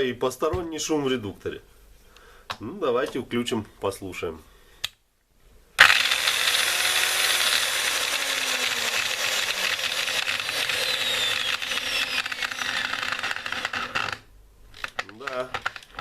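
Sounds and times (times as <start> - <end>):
angle grinder rattling grind: 5.8 - 16.0.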